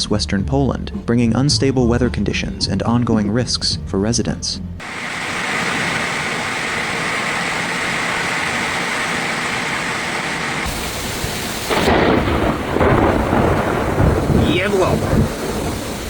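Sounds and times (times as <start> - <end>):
heavy rain falling: 4.8 - 16.0
thunder rumbling: 4.8 - 16.0.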